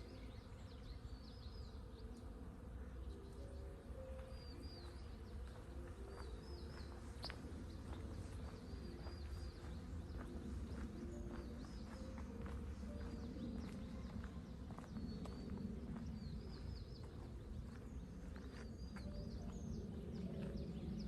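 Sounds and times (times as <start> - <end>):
songbird warbling chirps: 2.9 - 21.0.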